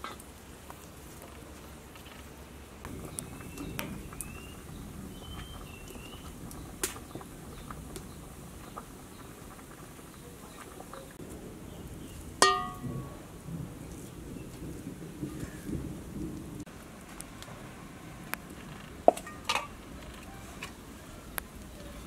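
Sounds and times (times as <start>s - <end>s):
metal utensil clinking on pot: 12.4s - 13.1s.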